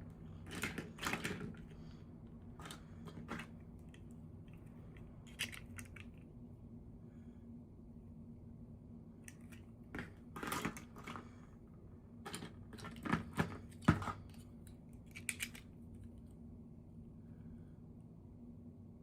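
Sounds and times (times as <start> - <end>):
faint steady hum: 0.0 - 19.0
plastic pieces clicking: 15.1 - 15.8.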